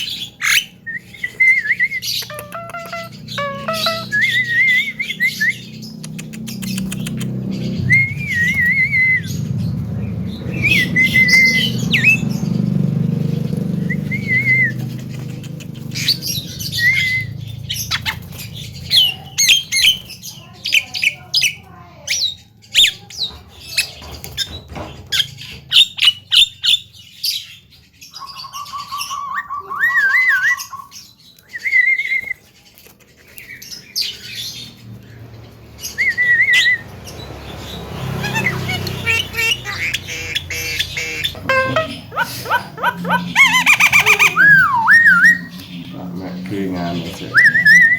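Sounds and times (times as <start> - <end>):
myna whistles clicks and squawks: 0.0 - 9.5.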